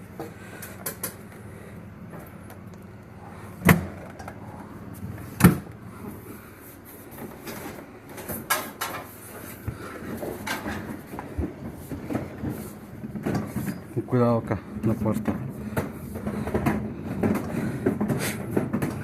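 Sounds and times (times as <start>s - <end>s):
small clatter: 14.8s - 19.0s.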